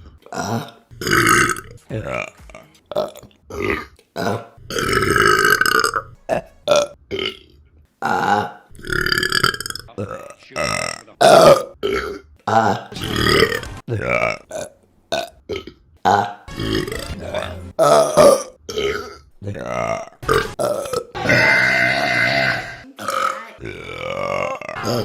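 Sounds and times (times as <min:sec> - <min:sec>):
woman burping: 0:20.6 - 0:25.0.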